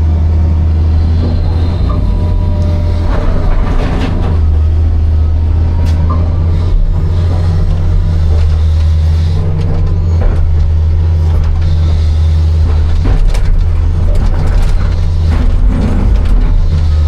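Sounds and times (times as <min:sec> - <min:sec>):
excavator diesel engine running: 0:00.0 - 0:17.0
rough scraping noise: 0:00.8 - 0:17.0.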